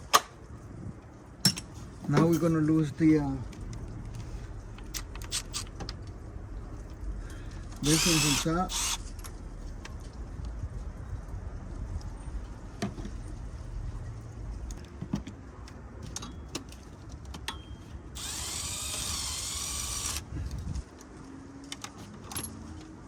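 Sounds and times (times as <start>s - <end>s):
metal tools clinking: 1.4s - 2.9s
cordless power tool spinning bolt: 7.8s - 9.1s, 18.2s - 20.3s.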